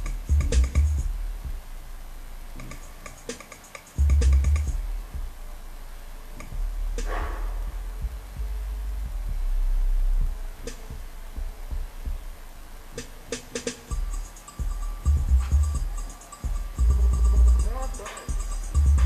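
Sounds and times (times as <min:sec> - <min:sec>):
deep sub-bass notes: 0:00.0 - 0:02.8, 0:04.0 - 0:19.0
clicking percussion: 0:02.6 - 0:04.8, 0:06.4 - 0:07.4, 0:13.0 - 0:19.0.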